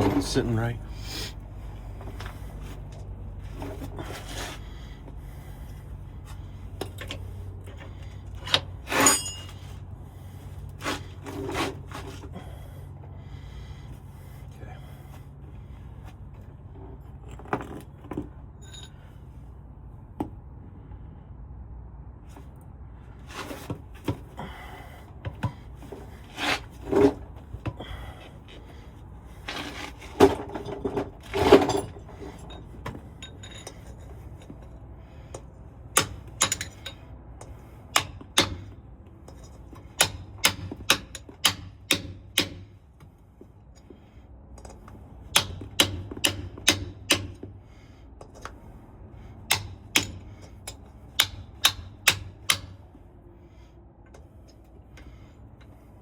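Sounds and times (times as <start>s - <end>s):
metal tools clanking: 0.0s - 0.8s, 6.8s - 9.8s, 17.1s - 19.2s, 29.4s - 34.8s, 36.0s - 37.5s
low steady hum: 0.0s - 56.0s.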